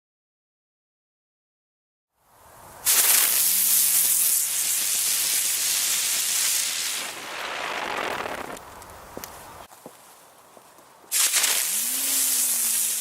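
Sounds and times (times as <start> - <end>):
firework spinner hissing sparks: 2.7 - 9.7, 11.1 - 13.0.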